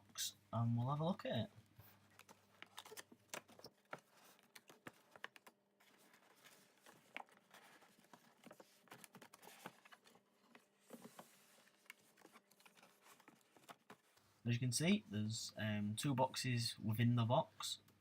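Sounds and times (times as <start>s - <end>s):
cardboard packaging being handled: 1.8s - 14.4s.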